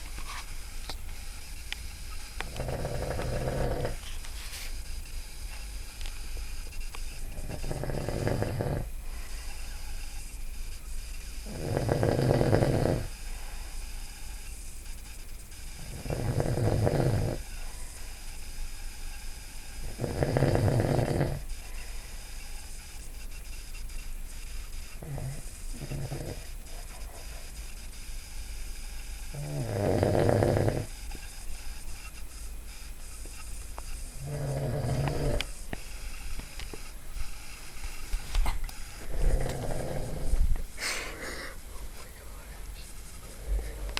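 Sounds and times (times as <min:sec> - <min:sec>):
man snoring loudly: 0:02.4 - 0:04.0, 0:07.3 - 0:08.9, 0:11.4 - 0:13.1, 0:15.9 - 0:17.4, 0:19.8 - 0:21.4, 0:25.0 - 0:26.5, 0:29.3 - 0:30.9, 0:34.2 - 0:35.4, 0:39.1 - 0:40.4
short snorts: 0:39.0 - 0:41.6.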